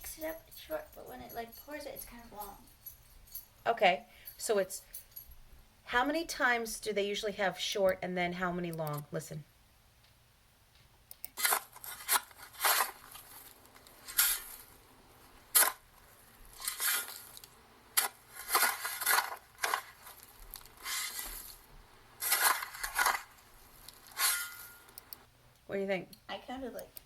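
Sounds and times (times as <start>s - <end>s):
shovel scraping into dirt: 11.4s - 13.3s, 14.0s - 14.7s, 15.5s - 15.8s, 16.6s - 17.3s, 18.0s - 21.6s, 22.2s - 23.3s, 24.0s - 24.8s.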